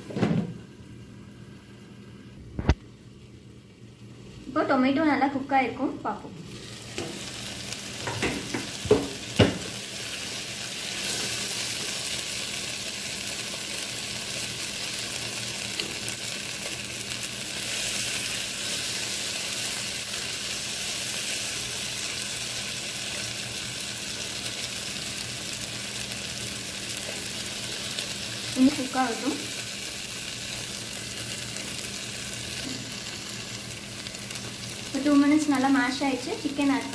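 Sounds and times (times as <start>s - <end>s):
masala sizzling in oil: 0.0s - 36.9s
sharp knocks against pan: 8.0s - 9.8s.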